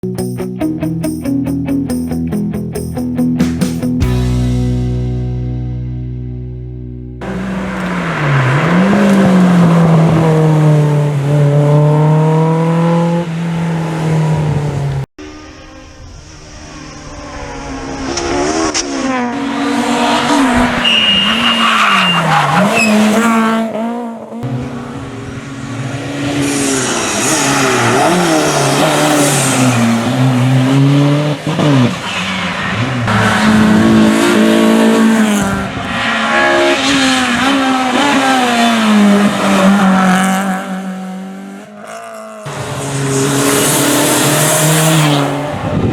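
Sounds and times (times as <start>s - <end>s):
rally car engines revving: 7.2s - 45.9s
tyre squeal: 19.4s - 23.4s, 25.3s - 38.5s.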